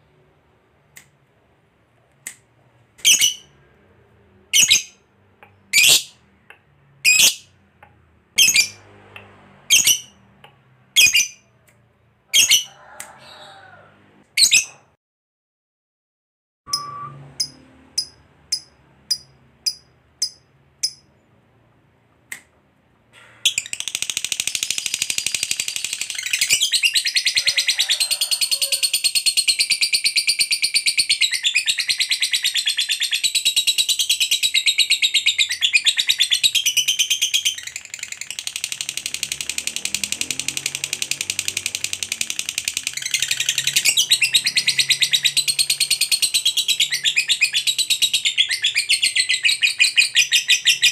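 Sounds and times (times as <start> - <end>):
bird chirping: 3.0 - 3.7, 4.5 - 7.6, 8.4 - 10.4, 11.0 - 11.5, 12.3 - 12.7, 16.7 - 21.4, 23.5 - 27.8, 28.7 - 50.9.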